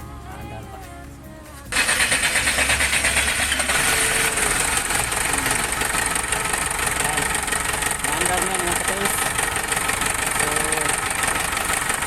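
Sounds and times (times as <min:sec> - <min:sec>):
diesel engine clatter: 0:01.6 - 0:12.0.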